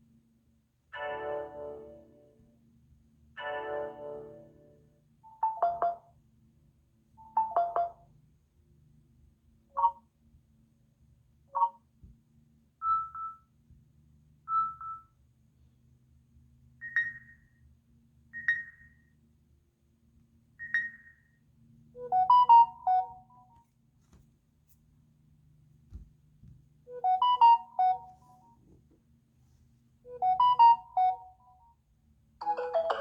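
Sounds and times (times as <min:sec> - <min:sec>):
phone alert tones: 0:27.0 - 0:28.3, 0:32.4 - 0:33.0.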